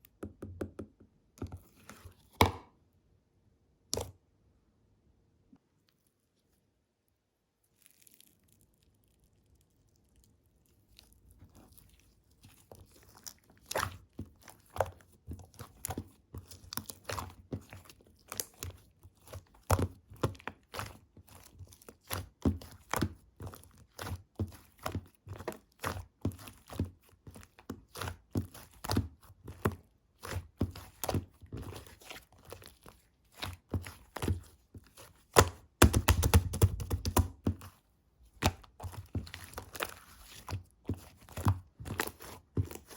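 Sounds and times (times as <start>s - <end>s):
slime crackling and popping: 7.7s - 12.0s, 35.2s - 37.4s.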